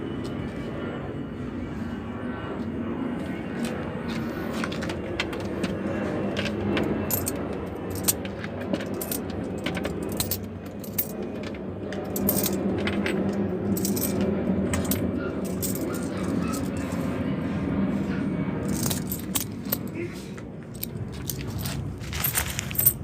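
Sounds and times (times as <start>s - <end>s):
steady low hum: 0.0s - 23.0s
coins clinking: 7.1s - 8.2s, 8.8s - 17.0s, 18.6s - 19.9s, 20.8s - 23.0s.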